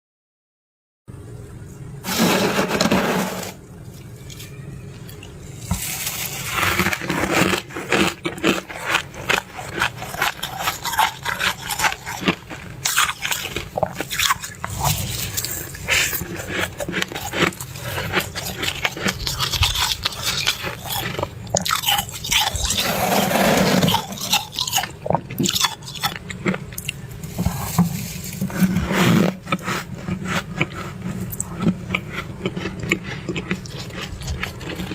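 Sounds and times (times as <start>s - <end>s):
frost scraping sweeps: 2.0s - 3.6s
frost crunching: 2.1s - 34.9s.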